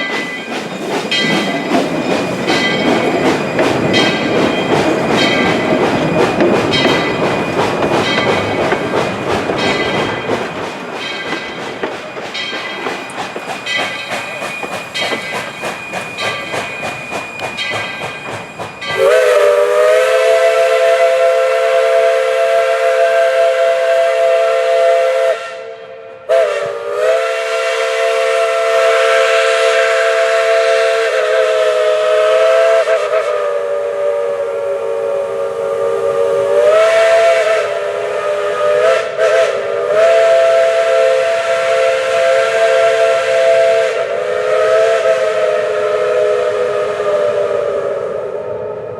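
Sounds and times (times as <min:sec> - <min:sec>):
train wheels clicking over rail joints: 0:00.0 - 0:21.0
steam locomotive whistle blast: 0:13.6 - 0:48.9.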